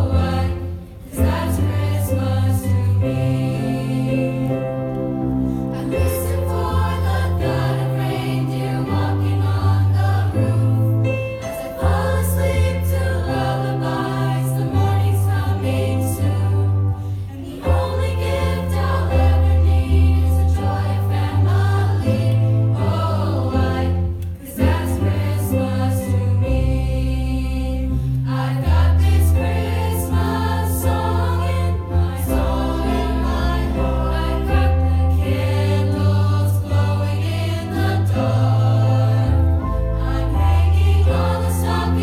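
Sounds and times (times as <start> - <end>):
choir singing in harmony: 0.0 - 42.0.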